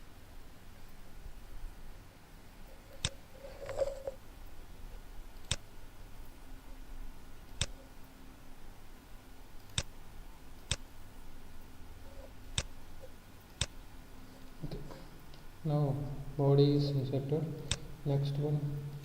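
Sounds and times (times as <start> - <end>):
computer mouse clicking: 3.0 - 3.2, 5.4 - 5.7, 7.5 - 7.9, 9.6 - 9.9, 12.6 - 12.8.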